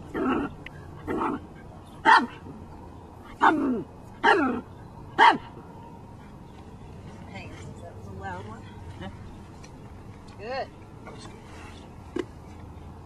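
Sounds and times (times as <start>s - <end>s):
small dog barking: 1.1s - 2.5s, 3.4s - 4.6s, 5.2s - 5.6s.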